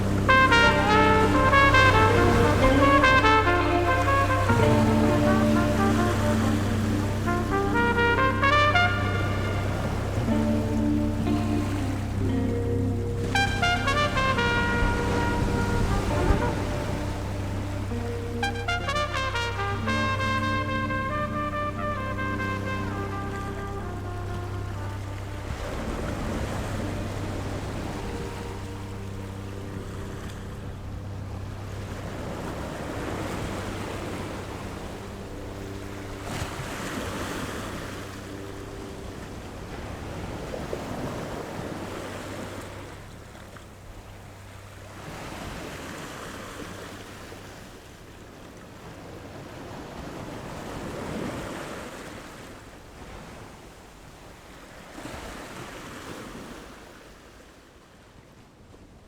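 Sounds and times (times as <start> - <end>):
low steady hum: 0.0 - 45.8
waves washing onto beach: 0.0 - 59.0.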